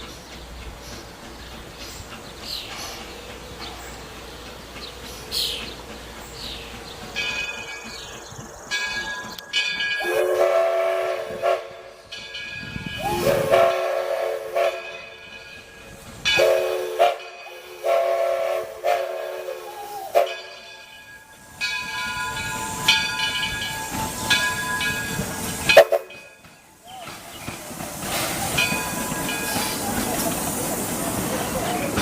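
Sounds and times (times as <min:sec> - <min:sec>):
steam hissing: 0:00.0 - 0:32.0
steam locomotive whistle blasts: 0:10.0 - 0:12.0, 0:13.0 - 0:15.2, 0:16.3 - 0:20.6, 0:25.5 - 0:26.3.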